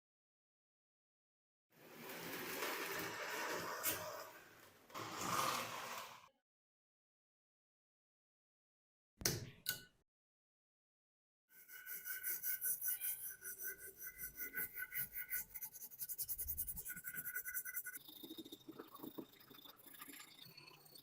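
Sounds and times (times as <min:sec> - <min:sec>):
brush scrubbing metal: 0:11.6 - 0:18.0.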